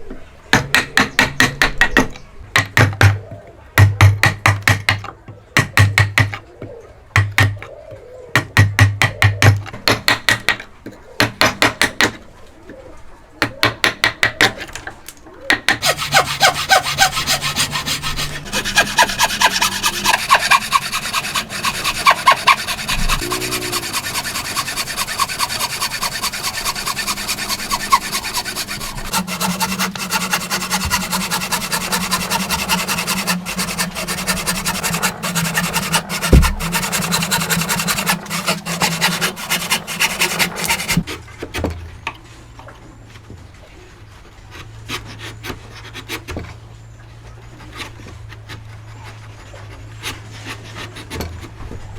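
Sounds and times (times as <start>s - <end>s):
hand saw cutting timber: 15.8s - 41.1s, 49.4s - 51.6s.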